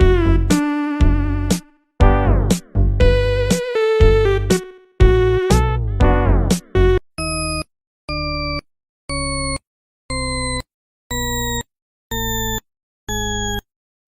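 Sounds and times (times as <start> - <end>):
electronic beeps: 7.2 - 13.7.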